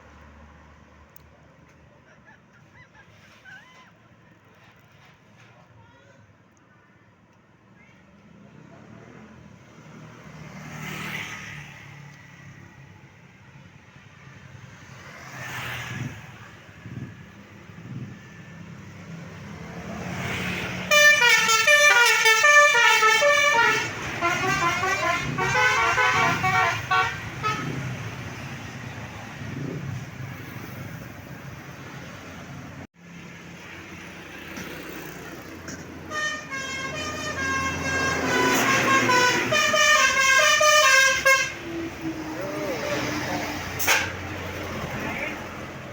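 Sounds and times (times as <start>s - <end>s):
road traffic rumbling: 0.0s - 45.9s
vehicles whooshing past: 8.1s - 45.9s
multi-tone bus horn tune: 20.8s - 28.0s, 36.0s - 43.1s, 43.8s - 44.3s.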